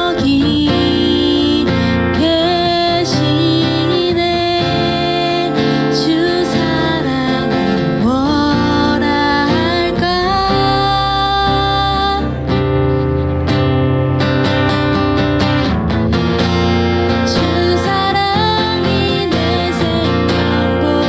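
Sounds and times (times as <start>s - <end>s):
person singing slow melody: 0.0s - 12.5s, 17.2s - 21.0s
strummed acoustic guitar: 0.0s - 21.0s.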